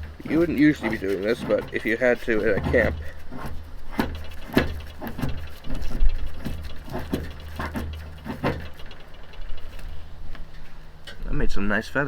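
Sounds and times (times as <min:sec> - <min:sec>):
knife carving wooden stick: 0:00.0 - 0:08.8.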